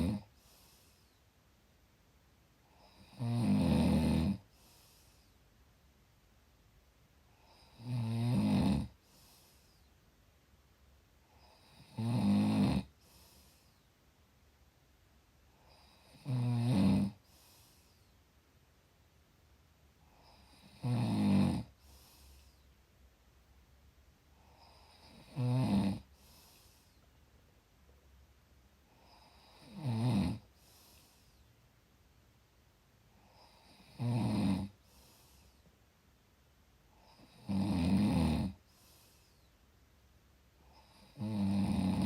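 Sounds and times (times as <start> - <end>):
person snoring: 0.0 - 1.2, 2.6 - 5.4, 7.4 - 9.8, 11.3 - 13.8, 15.6 - 17.9, 20.1 - 22.6, 24.4 - 27.0, 28.9 - 31.4, 33.2 - 35.5, 37.0 - 39.5, 40.6 - 42.0
faint breath: 0.3 - 1.4, 4.5 - 5.6, 9.0 - 10.0, 12.9 - 14.0, 17.2 - 18.3, 21.7 - 22.9, 26.1 - 27.3, 30.5 - 31.6, 34.8 - 35.9, 38.6 - 39.7.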